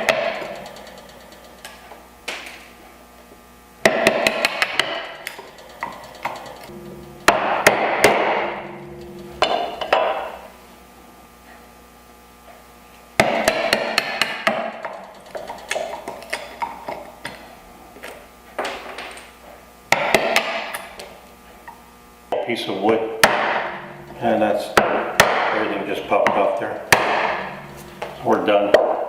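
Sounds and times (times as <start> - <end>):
mallet striking chisel handle: 26.9 - 27.6.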